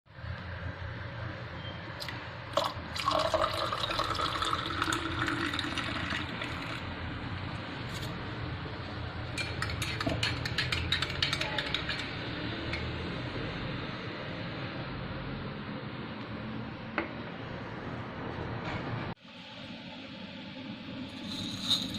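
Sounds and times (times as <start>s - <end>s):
liquid pouring into container: 2.0s - 6.9s
kitchenware clinking: 9.3s - 12.9s.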